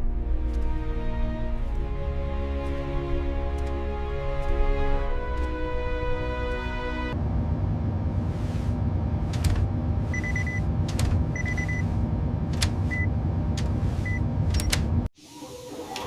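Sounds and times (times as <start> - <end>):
low mechanical rumble: 0.0 - 15.1
short electronic beeps: 10.1 - 10.6.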